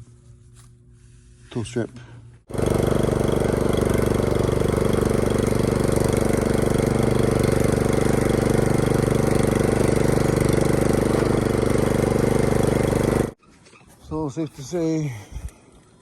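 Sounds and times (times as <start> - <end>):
vehicle engine running: 2.5 - 13.4.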